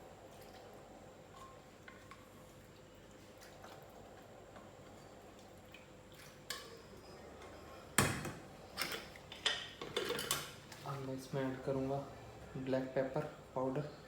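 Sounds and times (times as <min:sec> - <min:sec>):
kitchen utensils and dishes clinking: 0:08.8 - 0:10.6.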